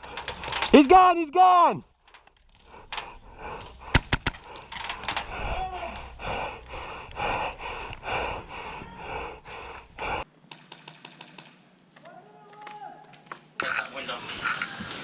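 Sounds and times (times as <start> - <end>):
sharp clicks or knocks: 2.1 - 5.3
person panting hard: 2.6 - 10.3.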